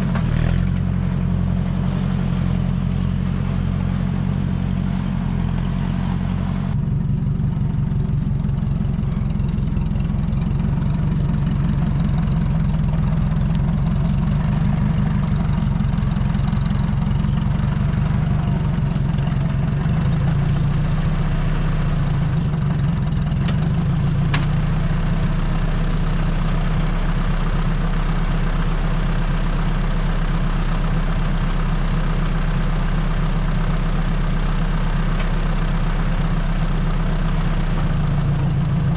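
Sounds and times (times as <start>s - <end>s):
tractor engine running: 0.0s - 38.9s.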